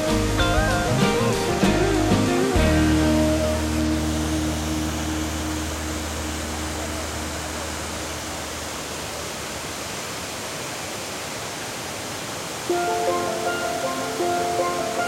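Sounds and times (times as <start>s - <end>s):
low background music: 0.0s - 8.4s
waterfall roaring: 0.0s - 15.0s.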